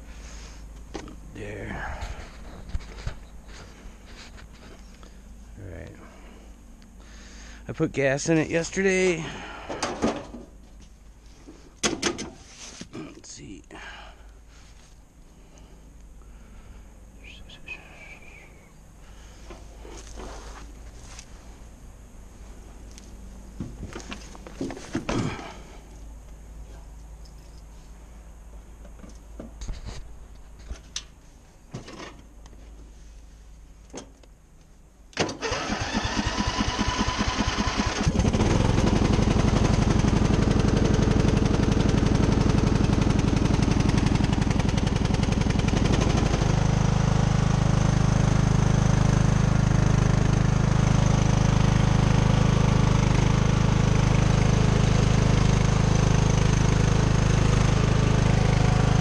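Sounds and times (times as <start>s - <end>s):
electric starter cranking engine: 35.2s - 59.0s
small engine running: 35.4s - 59.0s.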